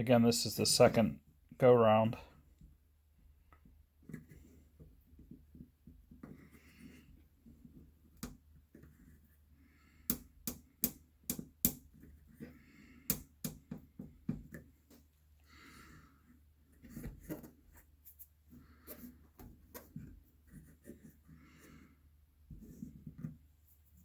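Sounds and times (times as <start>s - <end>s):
quiet handling sounds: 1.8s - 9.5s, 13.6s - 24.0s.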